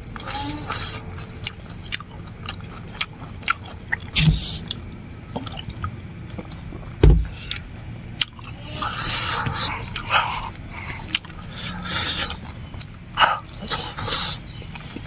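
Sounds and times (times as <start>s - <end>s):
chewing and mouth noises: 0.0s - 15.0s
low thump: 7.0s - 7.4s.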